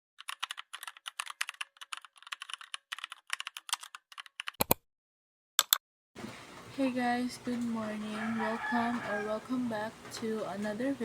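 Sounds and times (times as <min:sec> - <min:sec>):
keyboard typing: 0:00.2 - 0:04.8.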